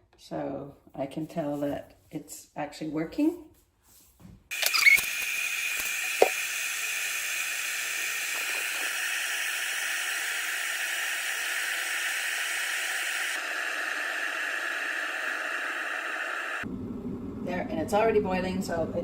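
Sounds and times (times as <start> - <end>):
electric kettle hissing rush: 4.5 - 17.5.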